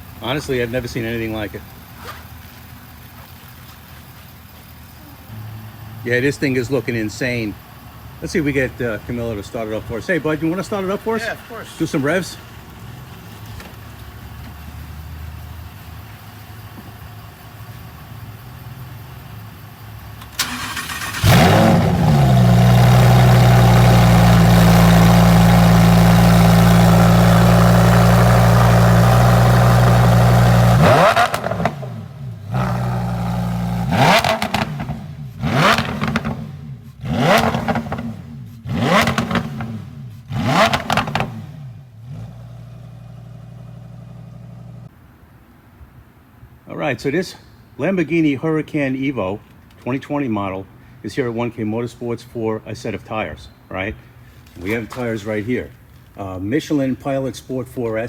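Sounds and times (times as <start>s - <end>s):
sports car engine starting: 0.0s - 45.0s
engine high idle: 14.4s - 44.9s
engine revving: 20.2s - 44.9s.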